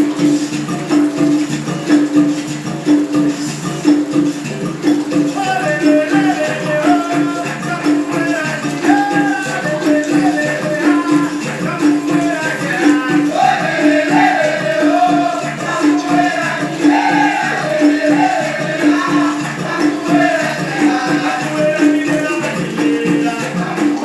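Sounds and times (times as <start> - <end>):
music with repeating bass note: 0.0 - 24.0.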